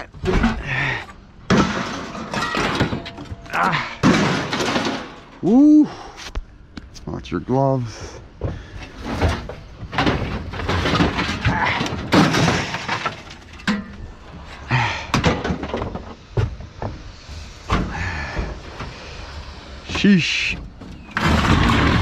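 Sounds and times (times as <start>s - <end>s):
scrap metal crashing and clanging: 0.2s - 5.5s, 8.8s - 16.3s, 20.9s - 22.0s.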